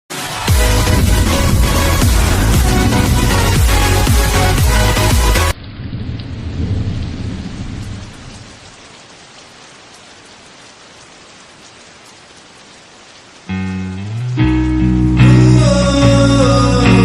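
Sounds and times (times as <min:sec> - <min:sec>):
steady rain: 0:00.1 - 0:17.0
low roll of thunder: 0:00.5 - 0:04.6, 0:05.5 - 0:08.7.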